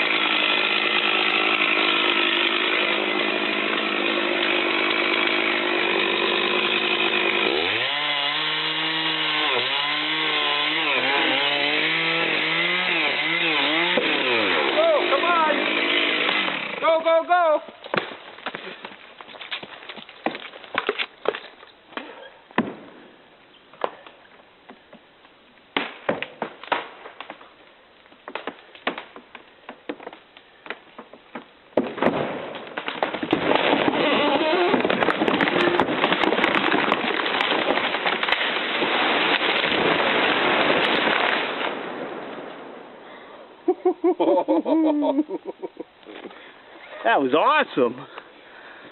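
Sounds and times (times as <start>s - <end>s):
wood cracking and snapping: 0.0s - 16.8s, 17.7s - 22.7s, 25.8s - 42.6s
tree crashing down: 28.2s - 42.9s.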